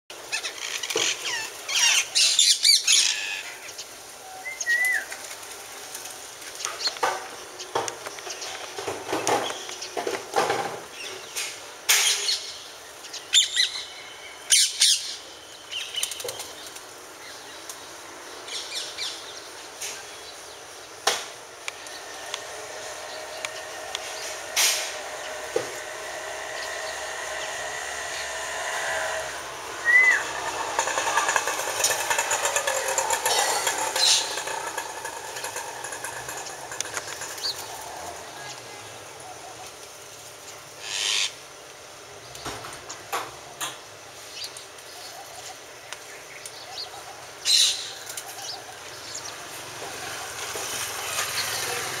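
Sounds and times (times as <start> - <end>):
parrots calling: 0.2 - 3.8, 13.3 - 15.2, 23.0 - 35.1, 40.8 - 41.4, 46.7 - 48.8
parrot harsh screech: 40.8 - 41.4.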